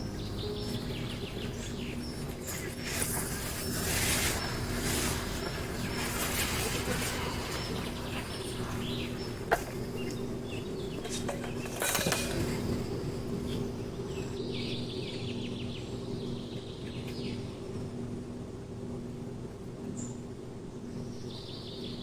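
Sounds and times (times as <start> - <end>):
low hum: 0.0 - 14.4
small birds chirping: 0.0 - 17.7, 20.9 - 22.0
short rustle: 0.4 - 10.2.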